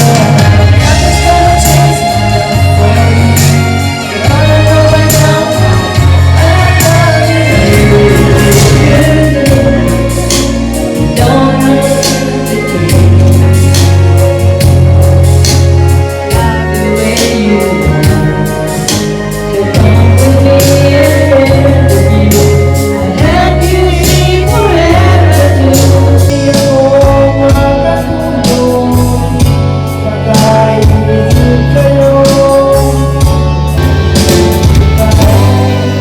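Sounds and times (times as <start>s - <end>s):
bass and drums beat: 0.0s - 36.0s
song with singing voice: 0.0s - 36.0s.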